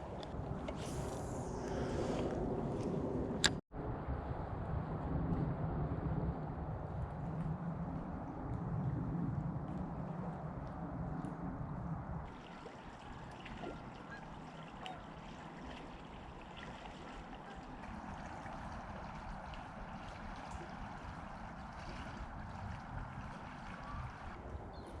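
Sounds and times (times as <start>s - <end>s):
flowing river water: 12.2s - 25.0s.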